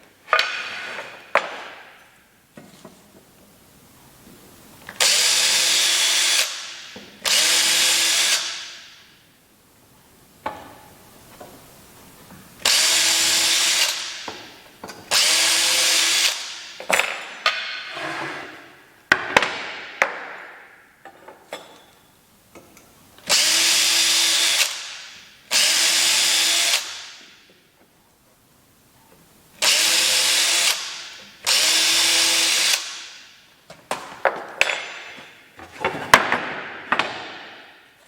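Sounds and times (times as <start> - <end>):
power drill whirring: 15.1 - 16.5, 23.3 - 24.9, 29.6 - 32.9.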